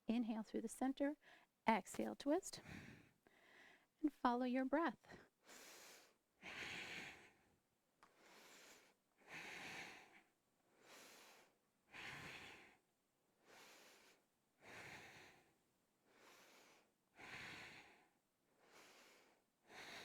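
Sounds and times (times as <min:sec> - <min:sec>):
woman breathing: 0:01.2 - 0:01.6, 0:02.6 - 0:04.0, 0:05.1 - 0:07.5, 0:08.1 - 0:12.8, 0:13.4 - 0:20.0.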